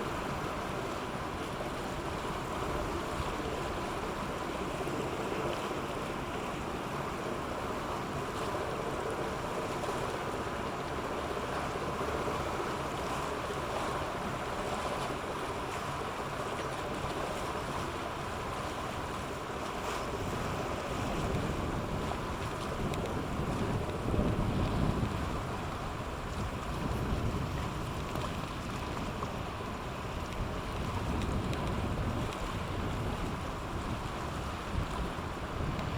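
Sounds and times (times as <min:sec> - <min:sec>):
distant ship engine hum: 0:00.0 - 0:35.9
water noise: 0:00.0 - 0:35.9
wind buffeting microphone: 0:20.1 - 0:35.9.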